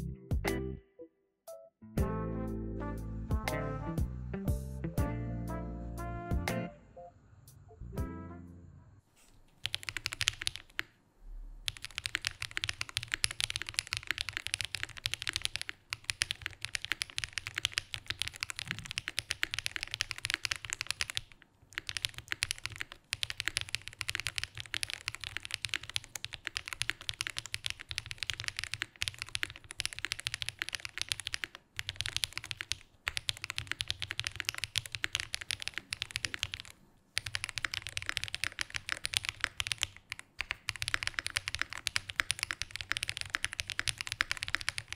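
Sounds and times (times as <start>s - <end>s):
fast typing on mechanical keyboard: 9.6s - 10.9s, 11.7s - 44.9s.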